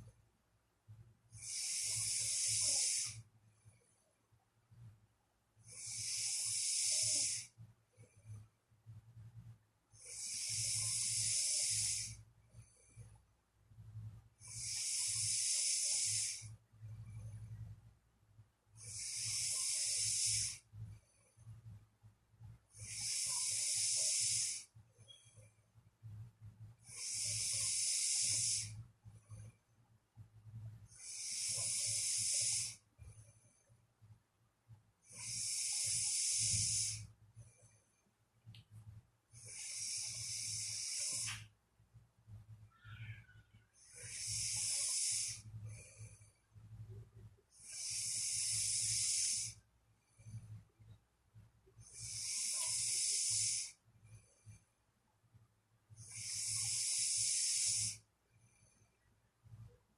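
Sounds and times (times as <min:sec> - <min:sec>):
steady low hum: 0:00.0 - 0:59.9
soft snoring: 0:01.3 - 0:03.9, 0:05.6 - 0:08.5, 0:09.9 - 0:13.2, 0:14.4 - 0:17.6, 0:18.7 - 0:21.6, 0:22.7 - 0:25.3, 0:26.8 - 0:29.5, 0:30.7 - 0:33.5, 0:35.0 - 0:37.8, 0:39.3 - 0:41.5, 0:43.7 - 0:50.6, 0:51.8 - 0:54.7, 0:55.9 - 0:58.9.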